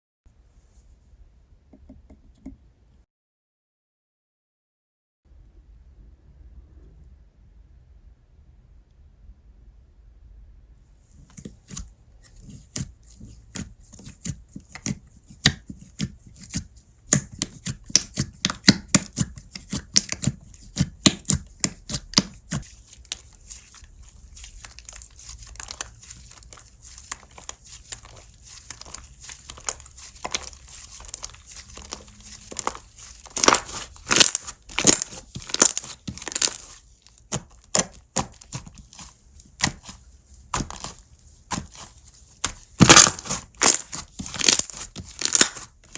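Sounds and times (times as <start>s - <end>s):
slime crackling and popping: 16.4s - 45.9s.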